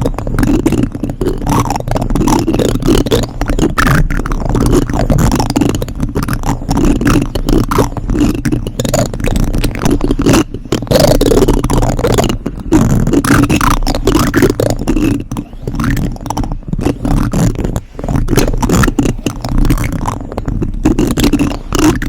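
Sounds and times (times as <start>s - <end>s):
plastic spoons scraping microphone: 0.0s - 22.0s
muffled bumps: 15.2s - 21.5s.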